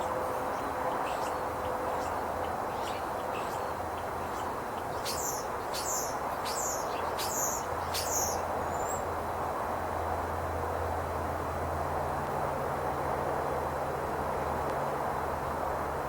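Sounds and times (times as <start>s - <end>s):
steady background hum: 0.0s - 9.5s
small bird sharp chirps: 4.3s - 9.0s.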